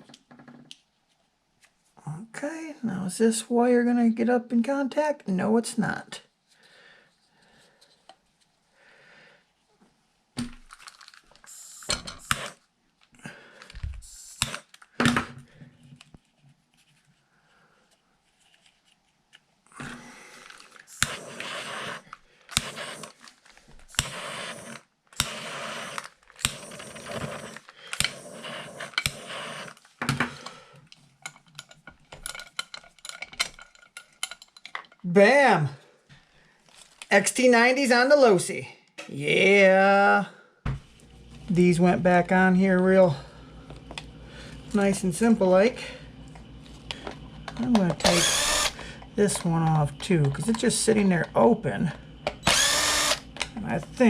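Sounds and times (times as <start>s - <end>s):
plastic parts clicking and knocking: 10.4s - 12.4s, 13.0s - 16.2s, 28.9s - 35.0s.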